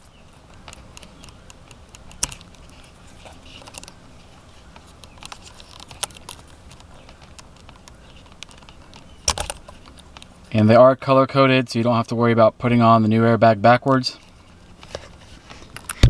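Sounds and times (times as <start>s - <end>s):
plastic connectors clicking and rattling: 5.0s - 10.3s.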